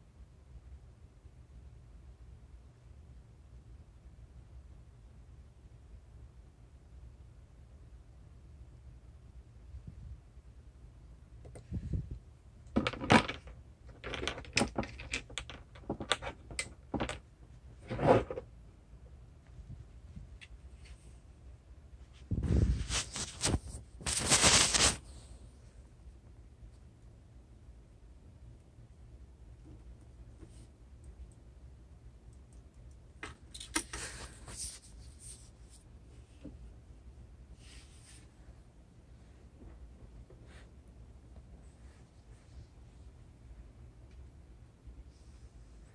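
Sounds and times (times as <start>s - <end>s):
faint low hum: 0.0s - 45.9s
small objects clicking and rustling: 12.7s - 17.2s.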